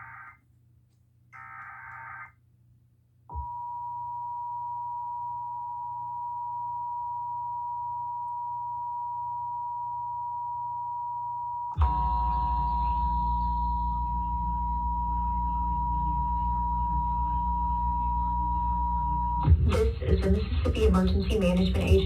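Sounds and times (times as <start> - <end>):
warbling digital data screech: 0.0 - 0.4, 1.4 - 2.3.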